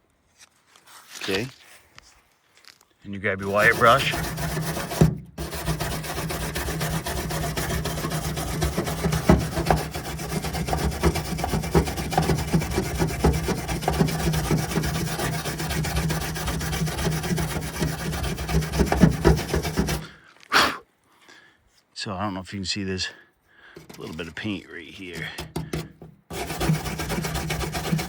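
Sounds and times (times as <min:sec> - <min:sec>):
wire brush scraping metal: 0:03.4 - 0:20.2, 0:23.8 - 0:28.0.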